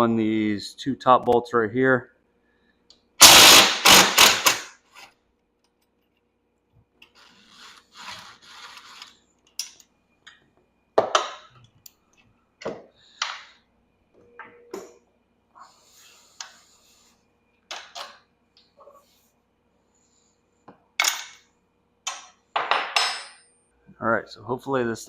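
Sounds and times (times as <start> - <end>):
power tool loosening bolt: 3.2 - 4.7.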